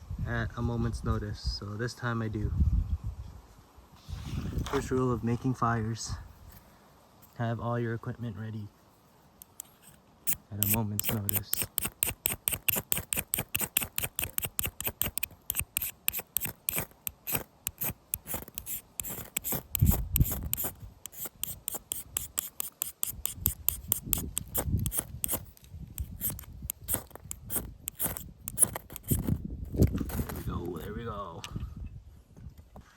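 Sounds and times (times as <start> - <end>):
fire-lighting tool scraping: 4.0 - 5.0, 9.3 - 31.0.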